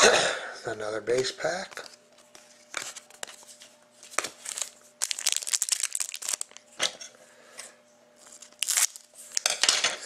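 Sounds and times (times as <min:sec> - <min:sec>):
wrappers crinkling and tearing: 0:04.0 - 0:06.8, 0:08.2 - 0:09.5.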